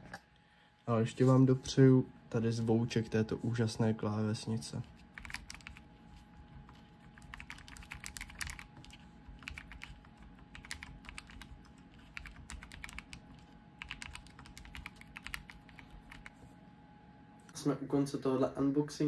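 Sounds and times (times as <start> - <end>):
mechanical keyboard typing: 5.1 - 5.8, 7.1 - 16.4.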